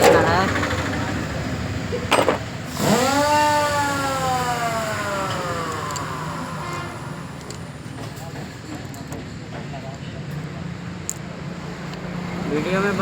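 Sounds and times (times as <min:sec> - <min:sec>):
gearbox part whining: 0:00.0 - 0:09.1.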